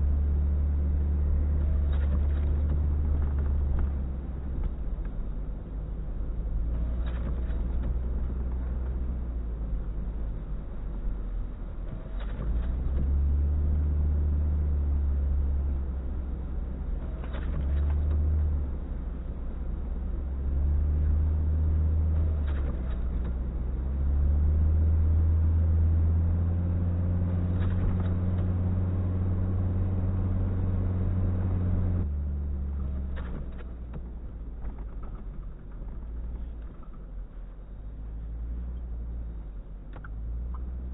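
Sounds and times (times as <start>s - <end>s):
vehicle engine revving: 19.6s - 37.0s.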